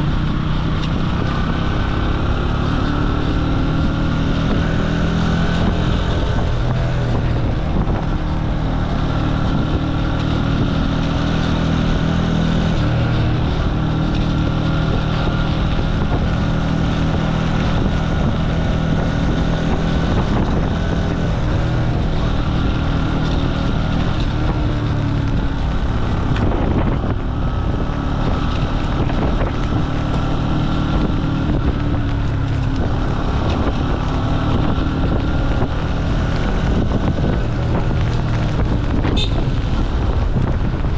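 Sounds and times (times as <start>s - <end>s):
motorcycle engine running: 0.0s - 40.9s
wind buffeting microphone: 0.0s - 40.9s.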